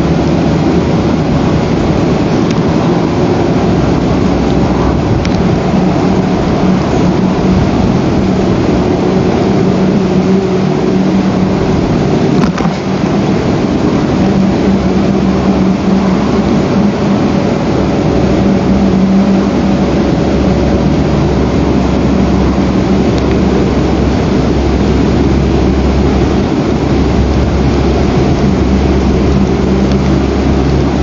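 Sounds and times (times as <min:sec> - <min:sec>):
loud rushing noise: 0:00.0 - 0:31.0
low hum: 0:00.0 - 0:31.0
sharp click: 0:12.4 - 0:12.9.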